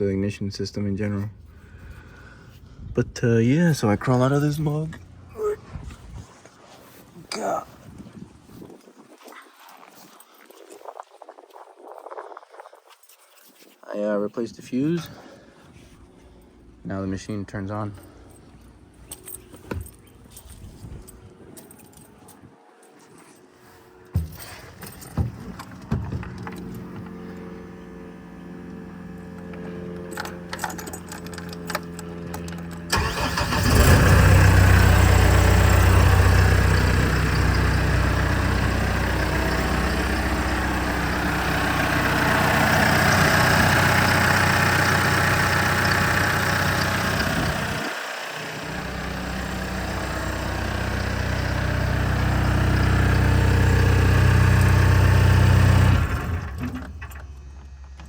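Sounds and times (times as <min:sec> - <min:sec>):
engine cranking and running: 0:24.6 - 0:58.0.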